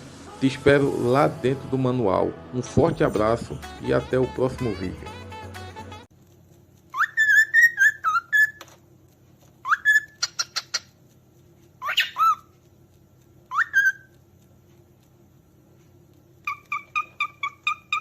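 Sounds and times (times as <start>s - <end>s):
cockatiel whistling: 6.9s - 8.6s, 9.6s - 10.9s, 11.8s - 12.5s, 13.5s - 14.2s, 16.4s - 18.0s.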